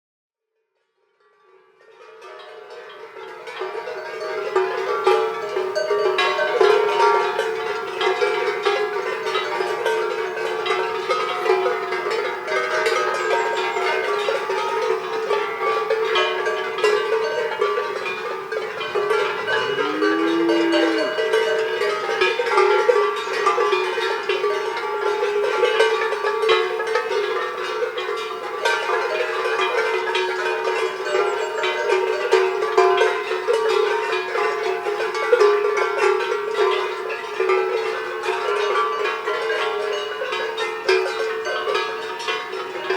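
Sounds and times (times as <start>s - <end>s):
cowbells clanking: 1.4s - 42.9s
cow mooing: 15.1s - 23.0s.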